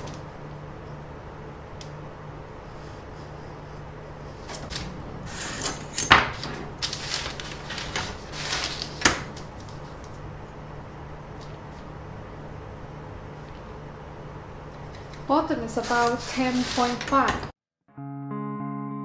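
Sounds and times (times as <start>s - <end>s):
steady low hum: 0.0s - 17.5s
rustling and handling: 4.3s - 10.4s, 14.7s - 17.4s.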